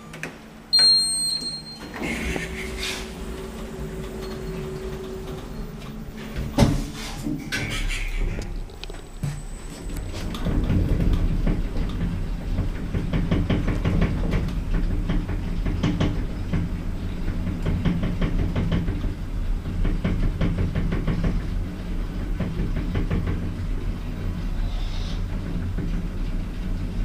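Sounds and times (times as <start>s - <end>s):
lift low rumble and hum: 0.0s - 27.0s
knocks and rattles: 3.3s - 24.5s.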